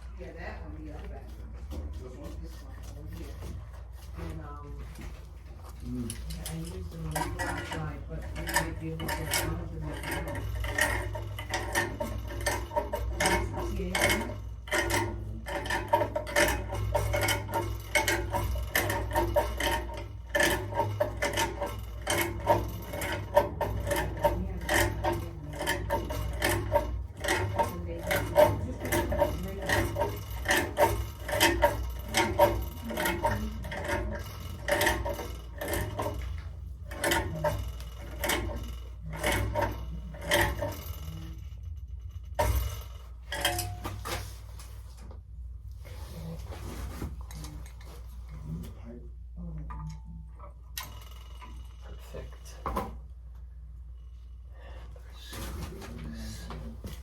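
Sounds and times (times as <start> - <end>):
steady low hum: 0.0 - 57.0
metal parts and tools clinking: 5.7 - 41.3, 42.3 - 44.4.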